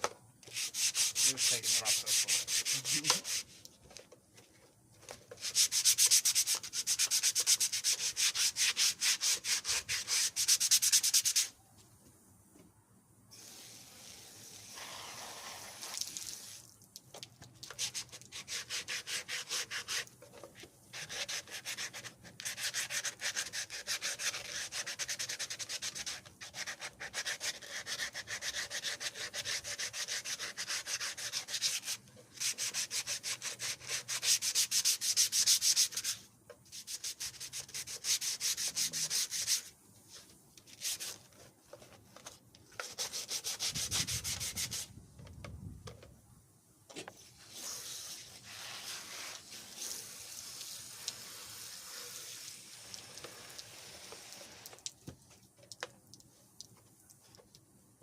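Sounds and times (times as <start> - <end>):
sandpaper scrubbing: 0.5 - 3.6, 5.4 - 11.5, 17.7 - 20.1, 20.9 - 41.2, 42.8 - 44.9, 47.4 - 50.2.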